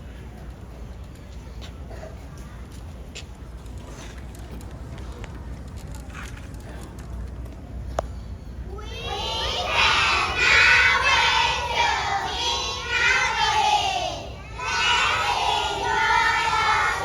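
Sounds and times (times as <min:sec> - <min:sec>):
crowd shouting and cheering: 0:08.8 - 0:17.0.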